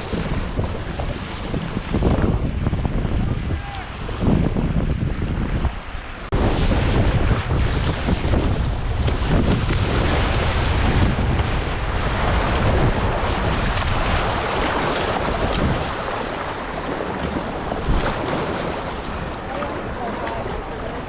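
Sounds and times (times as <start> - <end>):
wind buffeting microphone: 0.0 - 21.0
river water rushing and splashing: 5.7 - 21.0.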